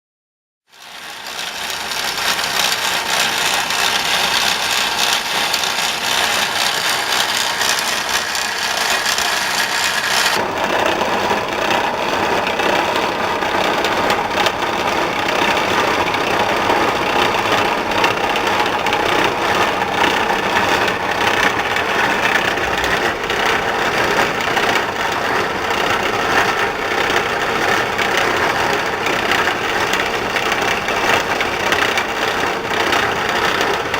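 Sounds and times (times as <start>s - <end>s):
machine running with rattle: 0.7s - 33.9s.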